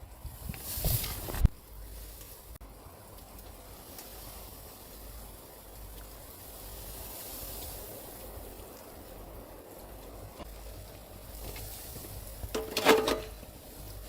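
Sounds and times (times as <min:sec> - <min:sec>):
steady hissing noise: 0:00.0 - 0:14.0.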